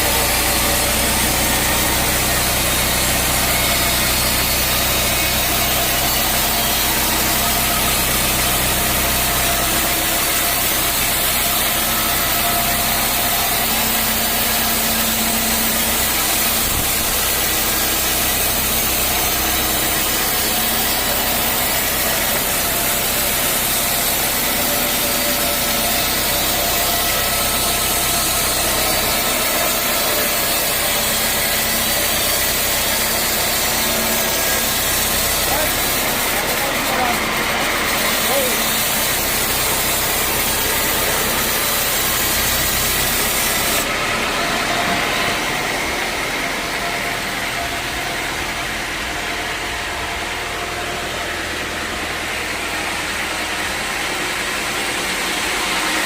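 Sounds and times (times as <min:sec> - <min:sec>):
loud hiss of wood being sawn: 0:00.0 - 0:43.9
sawmill engine: 0:00.0 - 0:56.0.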